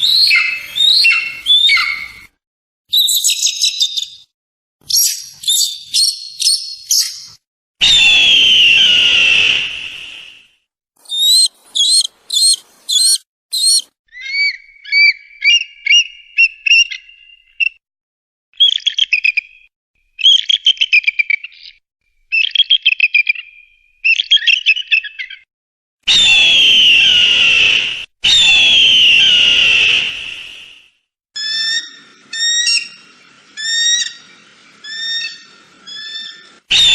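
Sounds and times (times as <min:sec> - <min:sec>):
eagle calling: 0:00.0 - 0:02.3, 0:11.0 - 0:17.1, 0:31.4 - 0:36.9.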